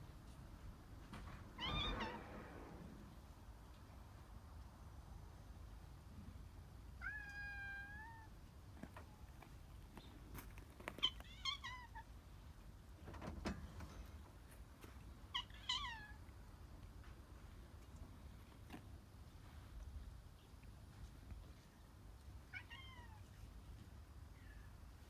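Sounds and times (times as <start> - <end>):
cat meowing: 7.0 - 8.3, 15.3 - 16.2, 22.5 - 23.3.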